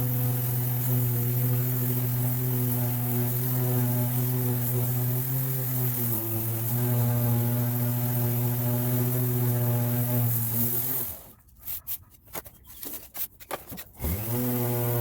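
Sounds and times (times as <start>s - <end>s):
power tool motor whine: 0.0s - 11.3s, 14.0s - 15.0s
clicks and scrapes: 11.2s - 14.0s.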